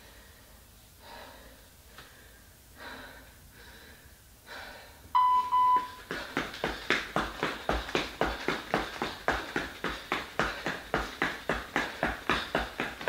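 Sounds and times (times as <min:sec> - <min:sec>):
heavy breathing: 0:00.0 - 0:05.1, 0:05.9 - 0:13.0
interval timer beeping: 0:05.2 - 0:06.1
rhythmic footfalls: 0:05.4 - 0:13.0.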